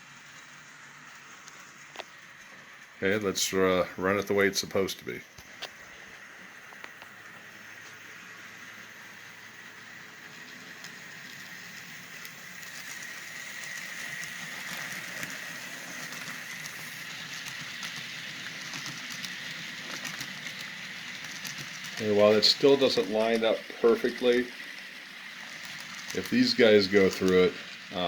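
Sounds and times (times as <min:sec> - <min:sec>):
model train motor whir: 0:00.0 - 0:28.0
wheels clicking: 0:06.7 - 0:28.0.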